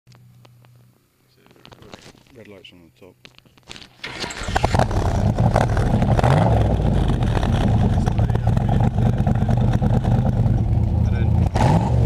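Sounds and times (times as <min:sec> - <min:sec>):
car engine running unevenly: 0:04.0 - 0:11.5.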